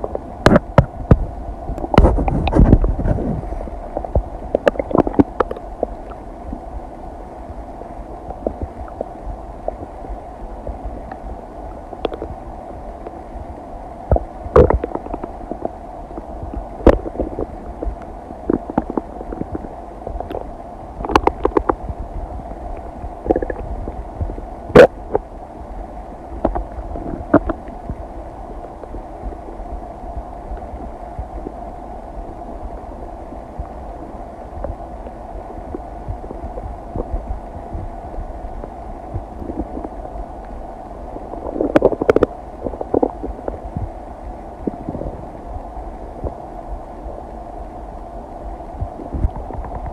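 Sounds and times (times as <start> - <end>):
stomach gurgles: 0.0 - 6.7, 8.2 - 12.4, 14.1 - 25.4, 26.3 - 49.9
low hum: 0.0 - 49.9.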